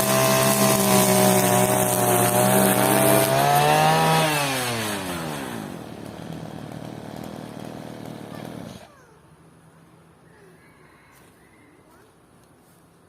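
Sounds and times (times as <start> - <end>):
grass trimmer engine running: 0.0 - 8.9.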